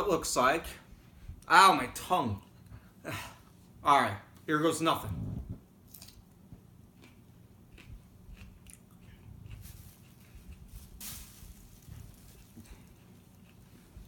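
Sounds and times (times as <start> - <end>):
person chewing crunchy pepper: 5.9 - 11.0, 12.0 - 14.0.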